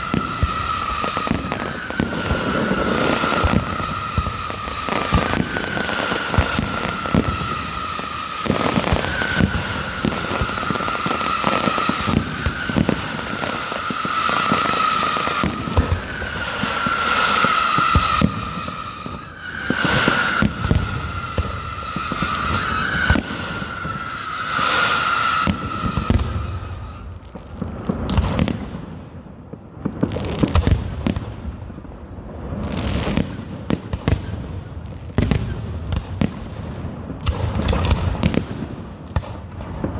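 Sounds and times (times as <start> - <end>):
fireworks bangs and crackling: 0.0 - 39.9
high whistling tone: 13.7 - 27.2.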